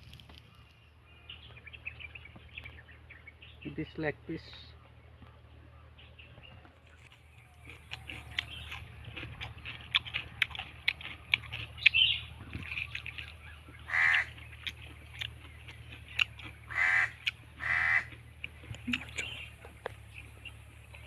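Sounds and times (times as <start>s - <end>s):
crow cawing: 13.9s - 14.3s, 16.7s - 18.2s.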